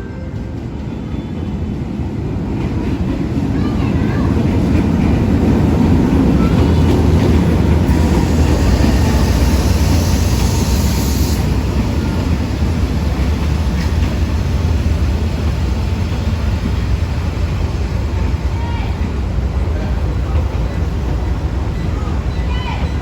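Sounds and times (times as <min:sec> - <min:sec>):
diesel locomotive rumbling: 0:00.0 - 0:23.0
hiss: 0:07.9 - 0:12.0.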